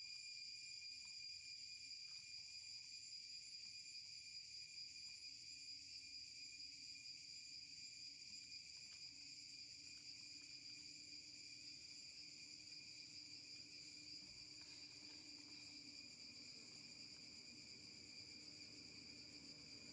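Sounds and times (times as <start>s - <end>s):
insects buzzing: 9.9s - 19.9s.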